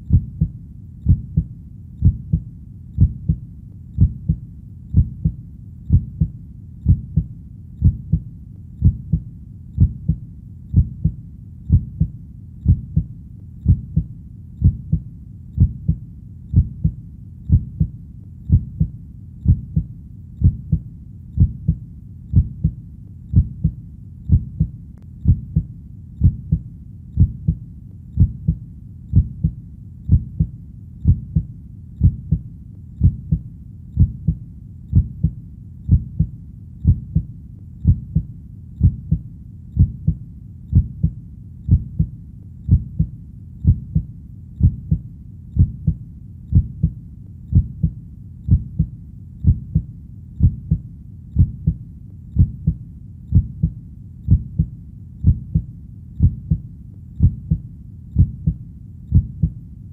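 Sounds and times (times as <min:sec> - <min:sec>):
heartbeat thumping: 0:00.0 - 0:03.4, 0:04.0 - 0:59.6.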